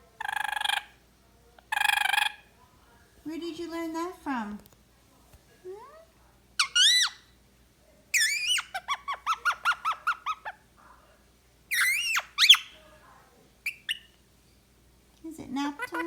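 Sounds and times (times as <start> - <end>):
parrot calling and chirping: 0.2 - 1.0, 1.7 - 2.5, 6.6 - 7.4, 8.1 - 10.7, 11.7 - 12.8, 13.6 - 14.2, 15.7 - 16.0.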